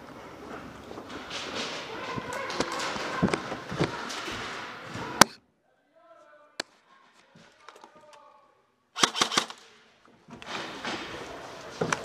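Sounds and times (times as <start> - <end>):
rustling noise: 0.1 - 5.2
airsoft gun shots: 9.0 - 9.7.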